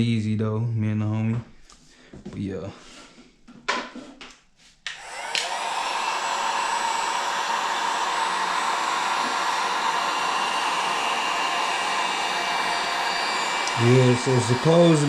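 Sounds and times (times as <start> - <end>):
heat gun blowing: 4.9 - 15.0.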